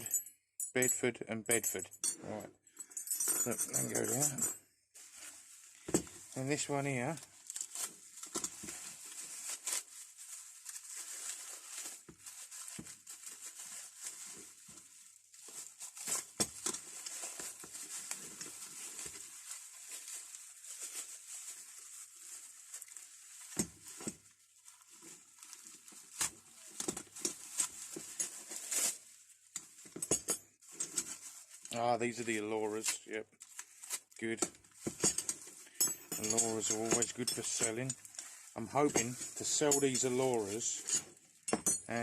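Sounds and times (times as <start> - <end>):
metal tools clicking and knocking: 0.0 - 2.2, 2.8 - 4.6, 34.9 - 38.0, 40.8 - 41.9
wrapping rustling and crinkling: 3.7 - 42.0.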